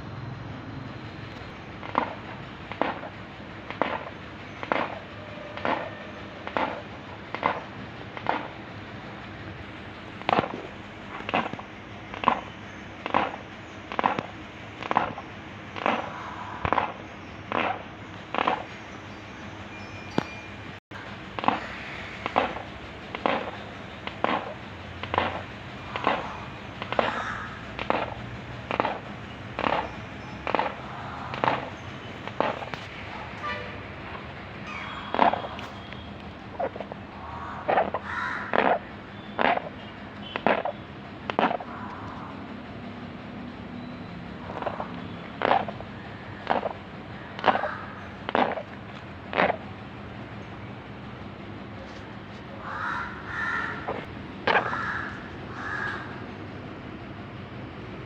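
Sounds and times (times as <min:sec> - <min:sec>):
animal grinding teeth: 0:48.3 - 0:48.7.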